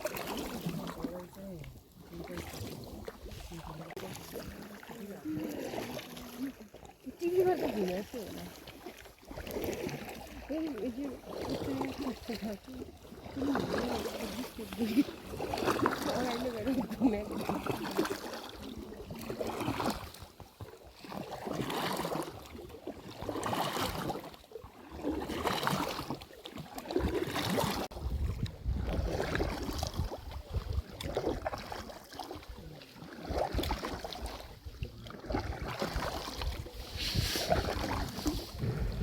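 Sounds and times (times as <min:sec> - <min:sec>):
oars splashing in water: 0:00.0 - 0:39.0
wind buffeting microphone: 0:27.9 - 0:31.0, 0:36.0 - 0:39.0.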